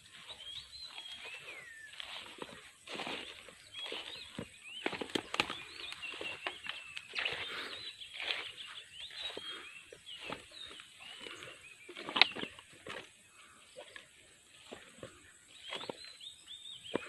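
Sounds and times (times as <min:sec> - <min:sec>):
birds chirping: 0:00.0 - 0:17.0.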